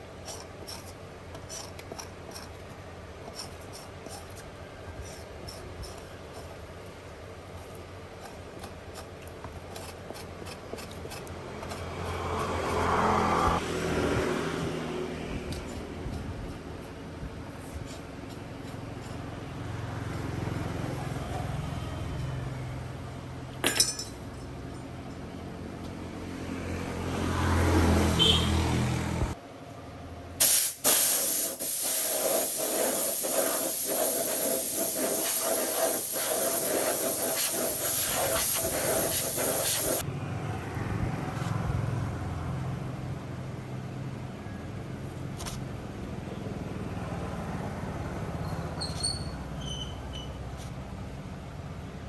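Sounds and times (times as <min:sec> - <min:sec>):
gas hissing under pressure: 0:30.4 - 0:40.0.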